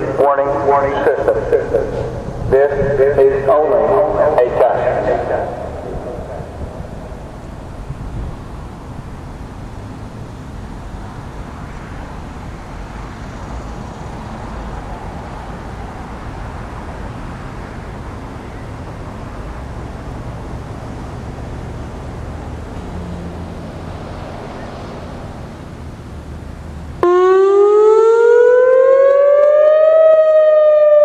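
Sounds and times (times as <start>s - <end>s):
road traffic: 0.0s - 31.0s
wind rumble on microphone: 1.0s - 25.8s.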